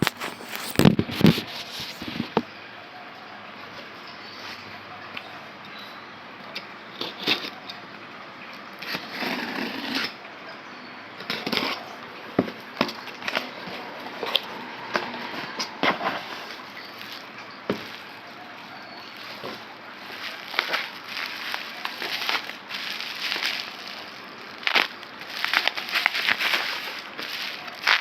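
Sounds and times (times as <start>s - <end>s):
packaging rustling and scraping: 0.0s - 2.4s, 12.5s - 28.0s.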